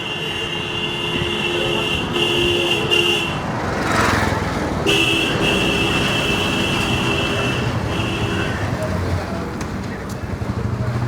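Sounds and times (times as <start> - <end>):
vehicle horns honking: 0.0 - 3.6, 4.8 - 9.0
engine and road noise: 0.0 - 11.0.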